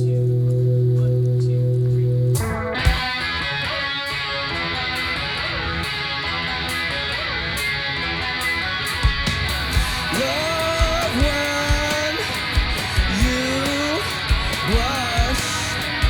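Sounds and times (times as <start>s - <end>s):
electric guitar strumming chords: 0.0s - 16.0s.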